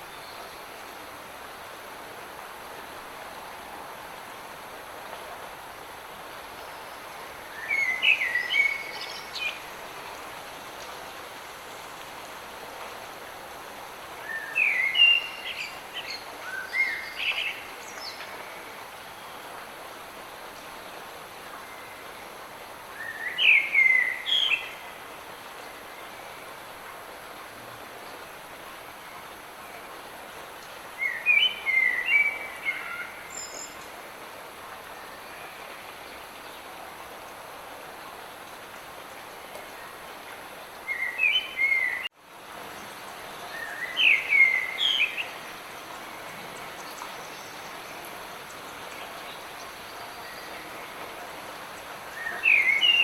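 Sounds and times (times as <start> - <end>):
light rain falling: 0.0 - 53.0
songbird singing: 6.6 - 10.2, 14.2 - 19.6, 22.9 - 26.5, 30.9 - 34.0, 40.7 - 42.1, 42.7 - 53.0.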